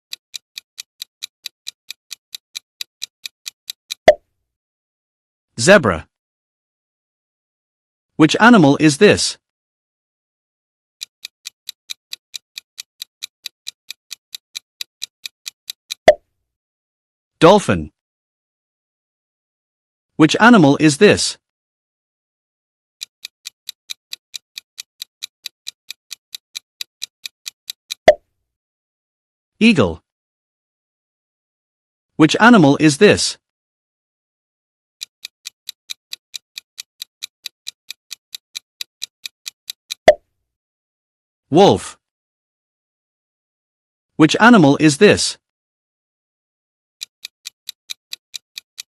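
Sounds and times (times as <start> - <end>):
quick clock ticks: 0.1 - 4.2, 11.0 - 16.2, 23.0 - 28.2, 35.0 - 40.2, 47.0 - 48.9.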